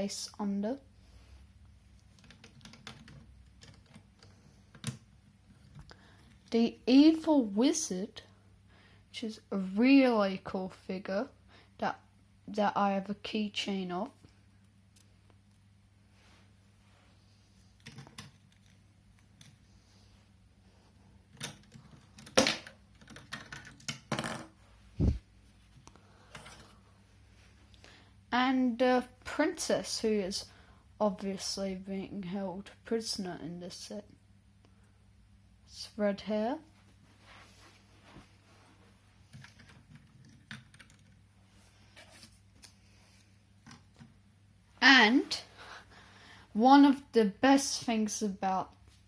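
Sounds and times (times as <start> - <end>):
plastic pieces clicking: 2.2 - 5.0
plastic pieces clicking and clacking: 2.2 - 5.0, 21.3 - 24.5, 39.3 - 41.2.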